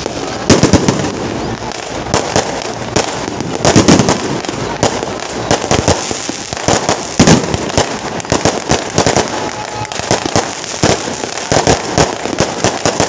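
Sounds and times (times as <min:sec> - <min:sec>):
firecrackers cracking: 0:00.0 - 0:13.0.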